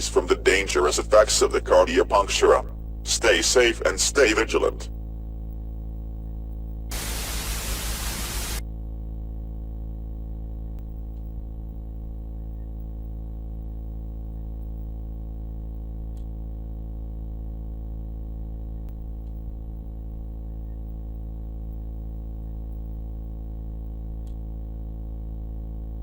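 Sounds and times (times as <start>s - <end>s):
white noise static burst: 6.9s - 8.6s.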